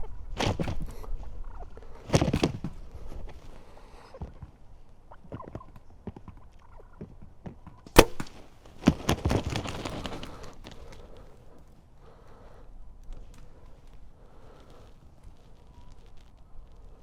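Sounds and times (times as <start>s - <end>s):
bird thrashing and flapping: 0.4s - 1.0s, 2.0s - 2.8s, 8.0s - 11.0s
bow string release crack: 8.0s - 8.4s.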